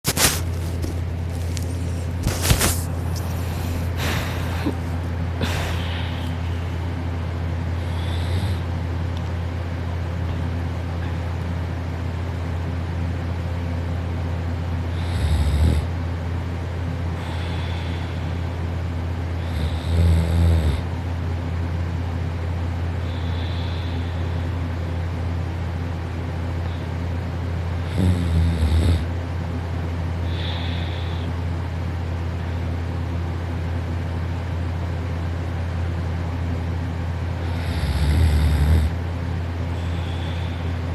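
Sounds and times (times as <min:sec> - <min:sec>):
steady low hum: 0:00.0 - 0:40.9
person snoring: 0:02.2 - 0:06.8, 0:07.8 - 0:08.8, 0:14.9 - 0:16.0, 0:19.4 - 0:20.9, 0:27.8 - 0:29.1, 0:30.2 - 0:31.3, 0:37.4 - 0:39.0.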